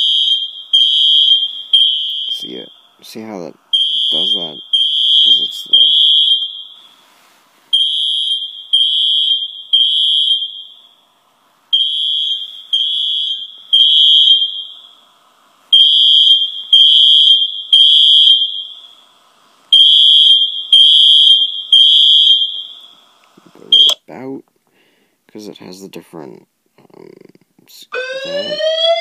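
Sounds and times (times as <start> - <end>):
smoke alarm beeps from phone: 0.0 - 2.8, 3.7 - 6.9, 7.7 - 11.0, 11.7 - 15.0, 15.7 - 19.0, 19.7 - 23.0, 23.7 - 24.0.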